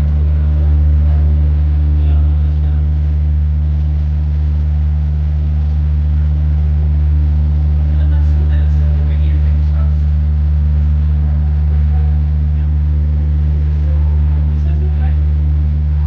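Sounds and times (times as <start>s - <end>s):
boat engine droning: 0.0s - 16.0s.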